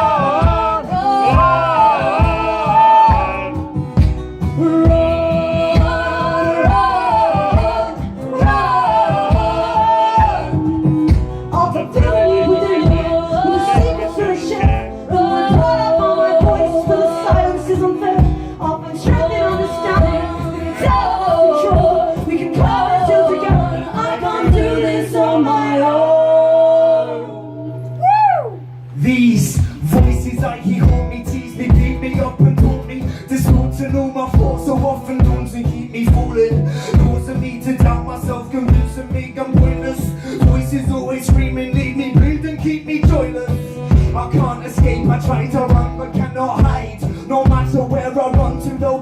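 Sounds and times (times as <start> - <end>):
drum beat: 0.0 - 24.9, 29.6 - 49.0
wordless singing: 0.0 - 28.0, 28.9 - 49.0.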